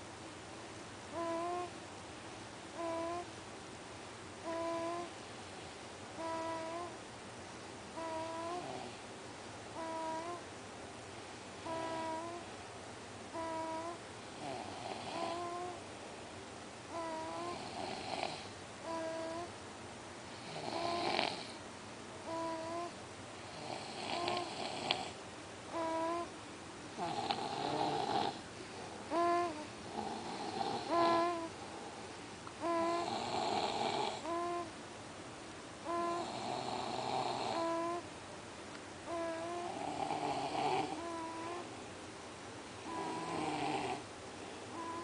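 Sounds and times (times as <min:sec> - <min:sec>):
baby snoring: 0:01.1 - 0:01.7, 0:02.7 - 0:03.3, 0:04.4 - 0:05.1, 0:06.2 - 0:07.0, 0:08.0 - 0:09.0, 0:09.7 - 0:10.4, 0:11.6 - 0:12.5, 0:13.3 - 0:15.8, 0:16.9 - 0:19.5, 0:20.4 - 0:21.6, 0:22.2 - 0:26.3, 0:27.0 - 0:28.4, 0:29.0 - 0:31.6, 0:32.6 - 0:34.7, 0:35.8 - 0:38.1, 0:39.0 - 0:41.7, 0:42.8 - 0:44.0, 0:44.7 - 0:45.0
man snoring: 0:08.0 - 0:08.9, 0:13.4 - 0:15.7, 0:17.0 - 0:19.5, 0:20.4 - 0:21.6, 0:23.5 - 0:25.2, 0:27.0 - 0:28.4, 0:29.1 - 0:31.5, 0:32.6 - 0:34.7, 0:35.9 - 0:38.0, 0:39.1 - 0:41.6, 0:42.9 - 0:44.0.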